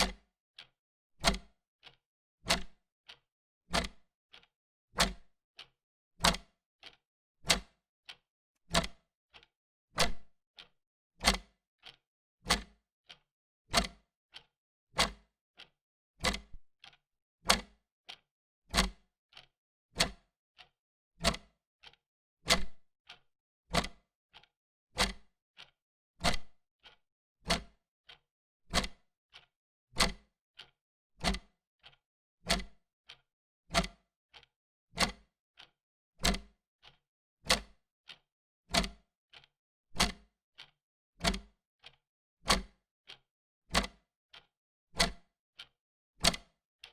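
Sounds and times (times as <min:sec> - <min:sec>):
mechanical clock ticking: 0:03.7 - 0:04.4, 0:11.2 - 0:12.7, 0:25.0 - 0:25.2, 0:27.5 - 0:27.7, 0:28.7 - 0:28.9, 0:35.0 - 0:35.2, 0:37.5 - 0:37.7, 0:38.7 - 0:39.4, 0:41.2 - 0:41.5, 0:42.5 - 0:42.7.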